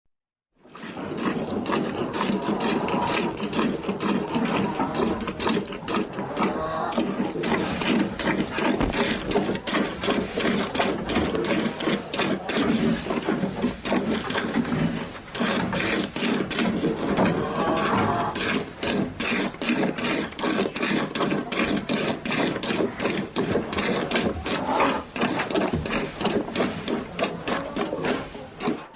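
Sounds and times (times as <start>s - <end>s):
milk squirting into pail: 0.7s - 14.3s.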